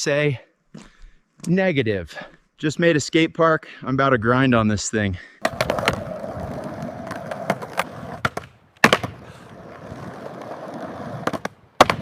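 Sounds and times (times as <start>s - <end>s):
skateboard clacking: 5.4s - 12.0s
skateboard wheels rolling: 5.4s - 12.0s.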